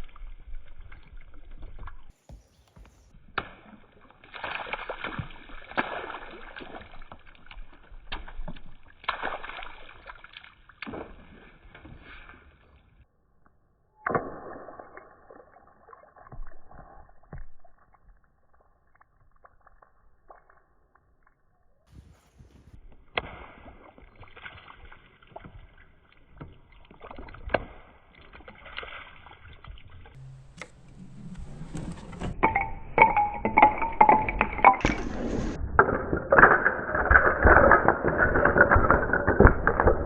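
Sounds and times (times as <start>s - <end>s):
marbles clicking and knocking: 30.2s - 40.0s
marbles rolling on a track: 30.9s - 40.0s.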